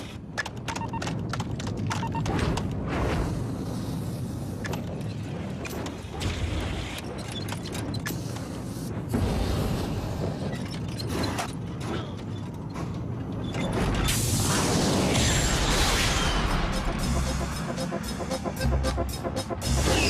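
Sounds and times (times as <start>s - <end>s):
metal mechanism clicking and creaking: 4.5s - 8.9s, 10.1s - 14.3s.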